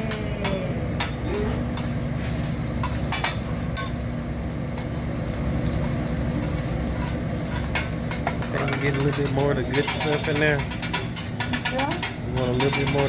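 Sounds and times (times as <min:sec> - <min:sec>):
rice sizzling on a griddle: 0:00.0 - 0:13.0.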